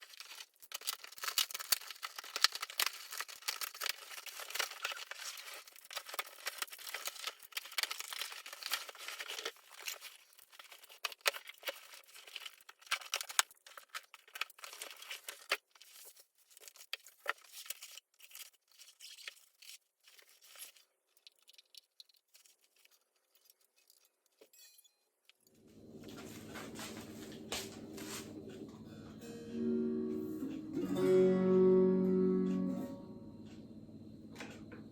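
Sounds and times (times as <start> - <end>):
packaging tearing and crinkling: 0.0 - 24.4.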